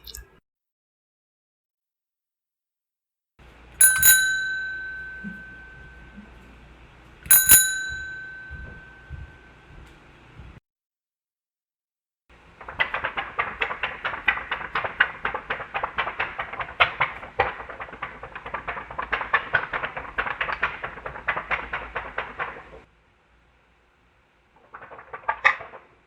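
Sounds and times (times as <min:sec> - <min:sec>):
rapid sharp taps: 0:12.5 - 0:22.9.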